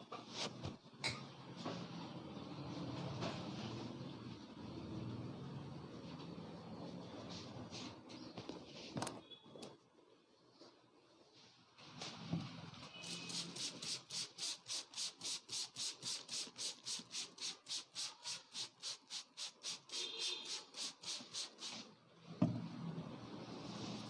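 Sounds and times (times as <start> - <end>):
hands rubbing head and hair: 13.4 - 22.0.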